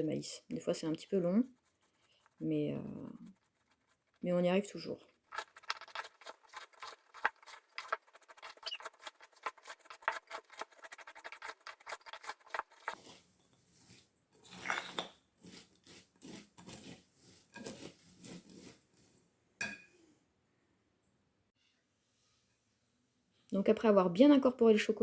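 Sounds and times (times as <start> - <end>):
spoon stirring crackling cereal: 0.7 - 19.2.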